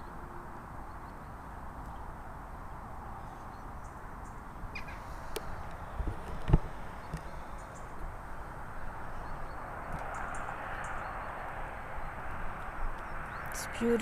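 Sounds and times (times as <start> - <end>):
background hiss and rumble: 0.0 - 14.0
distant crow caws: 4.7 - 6.0.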